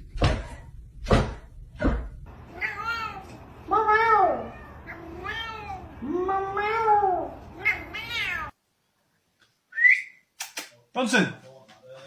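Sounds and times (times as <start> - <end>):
cat meowing: 2.4 - 8.6.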